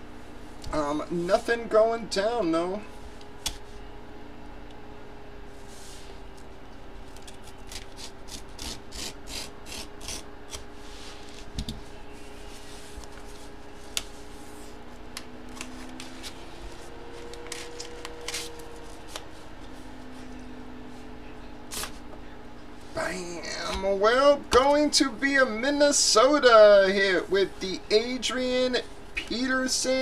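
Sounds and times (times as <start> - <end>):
scraping strokes: 5.5 - 6.2, 7.7 - 11.5
rustles and clicks: 10.5 - 21.1
hands rubbing packaging: 12.1 - 20.2.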